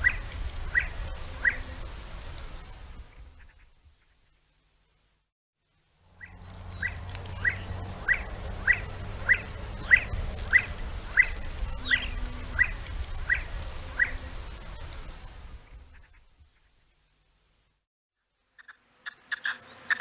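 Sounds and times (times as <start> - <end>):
faint background hiss: 0.0 - 20.0.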